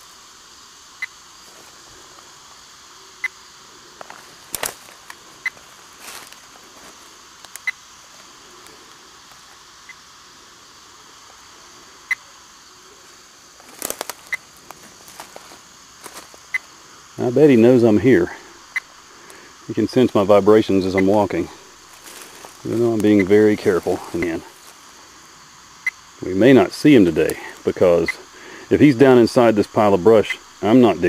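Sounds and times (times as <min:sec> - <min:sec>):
insects: 0:00.0 - 0:31.0
sharp crackles: 0:04.0 - 0:10.0, 0:13.5 - 0:17.7, 0:20.9 - 0:25.0.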